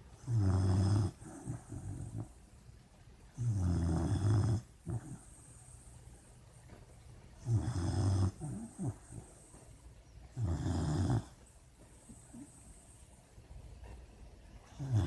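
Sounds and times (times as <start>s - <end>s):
puppy snoring: 0.0s - 2.5s, 3.3s - 6.0s, 7.4s - 13.1s, 14.6s - 15.0s.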